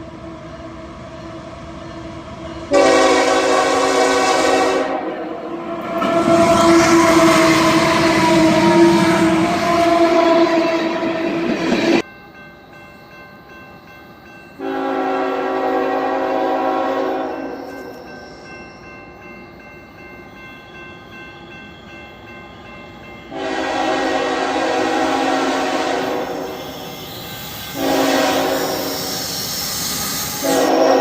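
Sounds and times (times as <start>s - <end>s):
locomotive air horn blasts: 2.7s - 11.4s, 14.6s - 17.6s, 23.3s - 29.2s, 30.3s - 31.0s.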